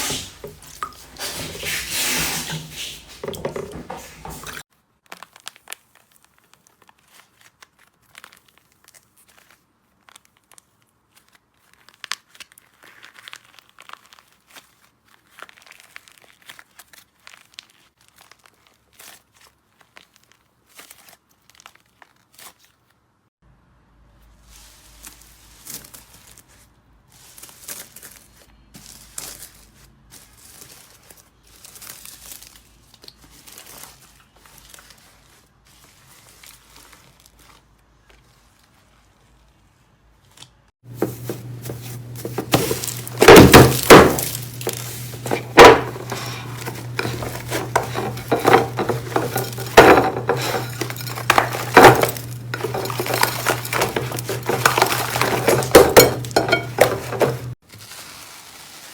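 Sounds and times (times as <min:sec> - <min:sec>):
slime crackling and popping: 0:05.0 - 0:22.6.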